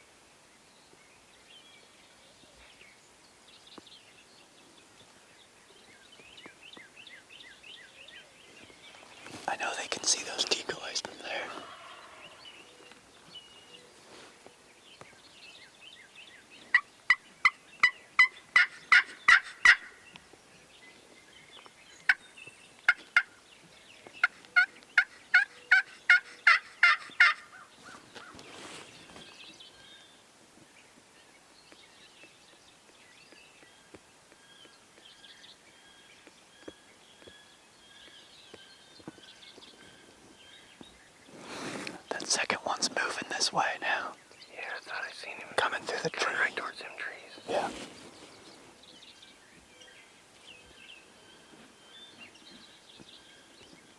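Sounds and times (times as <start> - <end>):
turkey yelping: 11.5 - 12.2.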